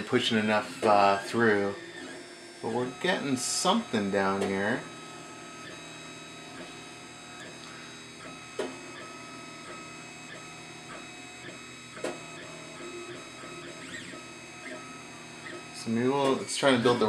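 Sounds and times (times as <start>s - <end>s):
printer stepper motors whining: 0.0s - 17.0s
sharp printer clunks: 3.9s - 4.8s, 8.2s - 17.0s.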